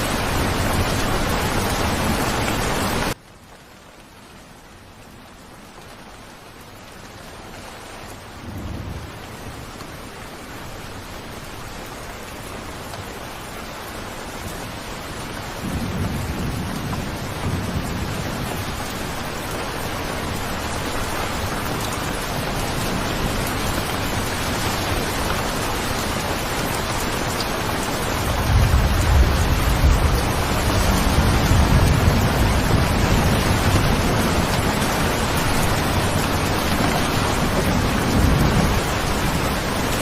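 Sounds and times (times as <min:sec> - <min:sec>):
heavy rain: 0:00.0 - 0:40.0
thunder rolling: 0:28.2 - 0:39.7.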